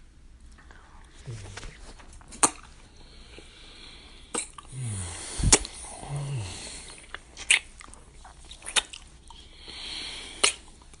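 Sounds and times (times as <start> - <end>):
soft mouth noises: 0.5 - 11.0
breathy exhaling: 3.0 - 7.1
wet kissing smacks: 4.3 - 4.6, 5.5 - 5.8, 7.0 - 9.1, 10.4 - 10.7.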